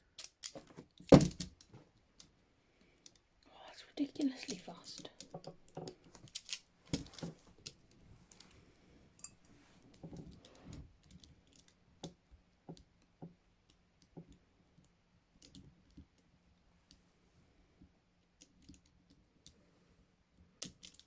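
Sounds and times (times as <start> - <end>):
handcuffs clicking: 0.2 - 0.7, 6.1 - 7.8
handling rustle: 4.2 - 10.6.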